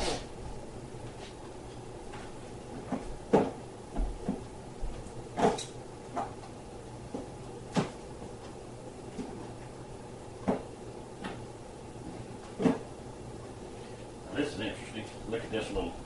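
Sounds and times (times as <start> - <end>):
faint steady hum: 0.0 - 16.0
objects knocking and clunking: 2.7 - 4.5, 12.4 - 12.9.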